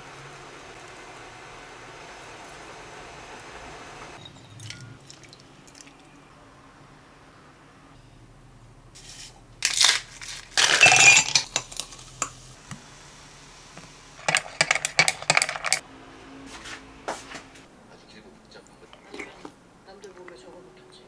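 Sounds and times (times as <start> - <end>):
hard objects clinking and clattering: 9.0 - 12.4, 14.2 - 15.8.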